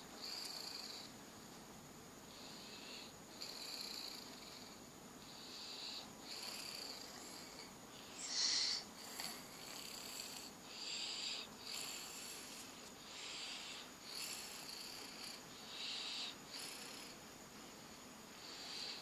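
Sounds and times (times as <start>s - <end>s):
person snoring: 5.6s - 17.2s.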